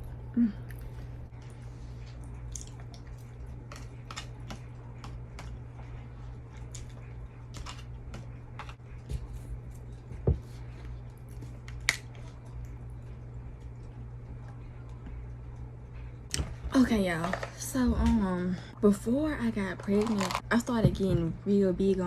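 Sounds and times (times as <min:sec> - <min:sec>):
steady low hum: 0:00.0 - 0:22.0
person chewing food: 0:00.6 - 0:15.8.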